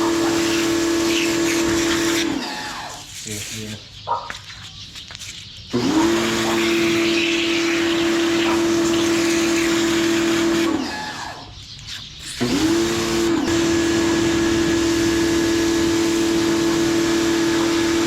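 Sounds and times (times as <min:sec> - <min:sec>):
pressure washer running: 0:00.0 - 0:03.1, 0:05.7 - 0:11.5, 0:12.4 - 0:18.0
motor rising whine: 0:12.4 - 0:18.0.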